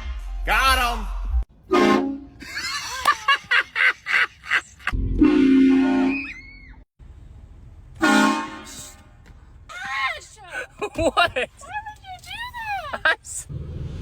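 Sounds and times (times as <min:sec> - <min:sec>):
car horn blast: 0:01.7 - 0:02.4, 0:05.2 - 0:06.3, 0:08.0 - 0:09.2.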